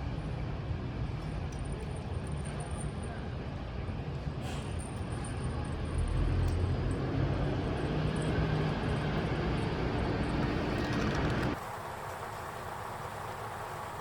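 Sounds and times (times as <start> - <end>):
vehicle engine hum: 4.1 - 14.0
road noise rushing: 6.1 - 14.0.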